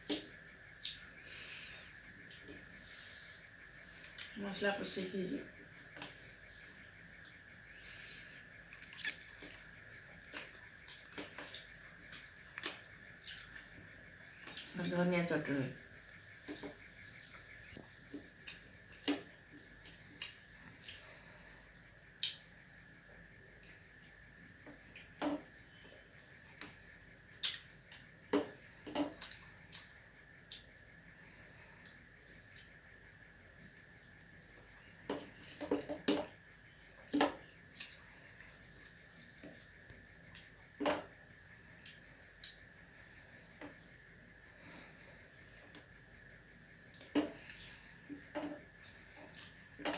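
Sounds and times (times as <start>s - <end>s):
cricket chirping: 0.0s - 49.9s
person chewing food: 5.8s - 14.8s, 16.4s - 32.8s.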